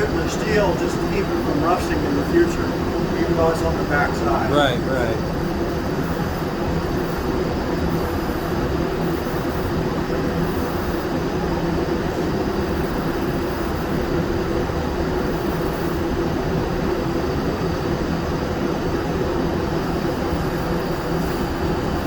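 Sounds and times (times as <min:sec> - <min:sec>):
machine hum: 0:00.0 - 0:08.3.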